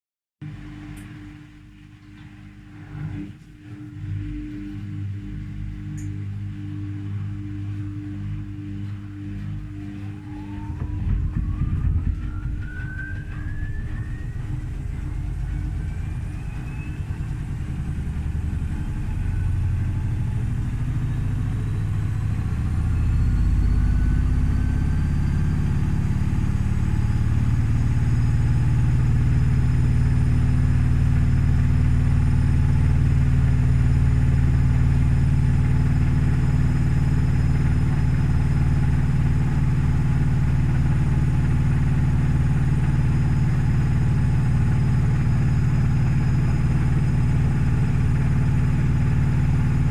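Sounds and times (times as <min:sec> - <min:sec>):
washing machine motor whine: 0:00.4 - 0:49.9
washing machine drum rumble: 0:03.3 - 0:23.2.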